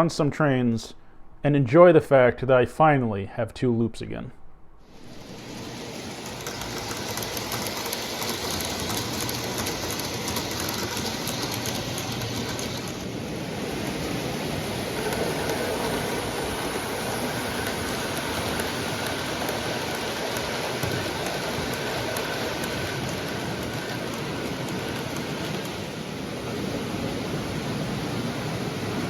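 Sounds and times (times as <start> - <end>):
model train wheels and motor rumbling: 4.9 - 29.0
clicking over rail joints: 5.4 - 13.1, 13.8 - 26.0.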